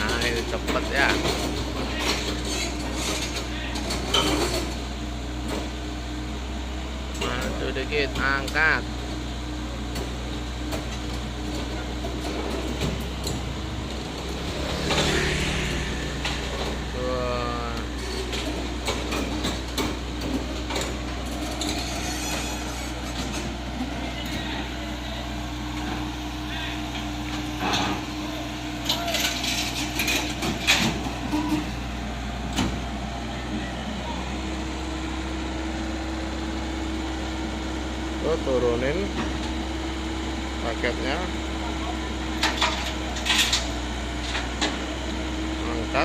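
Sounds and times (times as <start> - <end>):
excavator diesel engine droning: 0.0 - 46.0
metallic clanks and rattles: 28.8 - 31.7.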